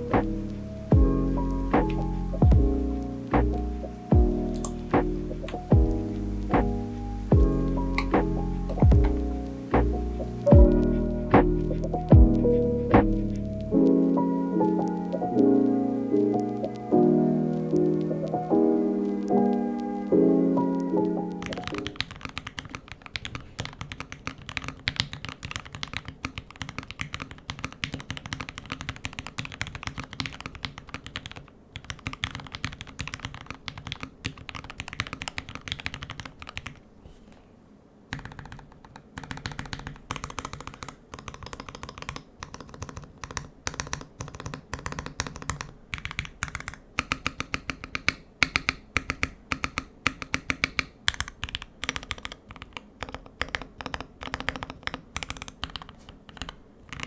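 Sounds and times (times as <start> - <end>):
mechanical keyboard typing: 16.2 - 36.8, 38.1 - 57.0.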